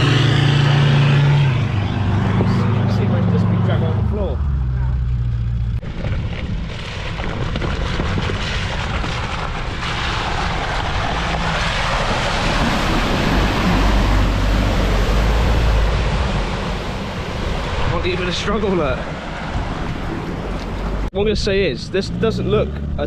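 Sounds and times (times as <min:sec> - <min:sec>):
tyres churning mud and water: 0:00.0 - 0:04.3, 0:05.8 - 0:23.0
engine running under heavy load: 0:00.0 - 0:06.0.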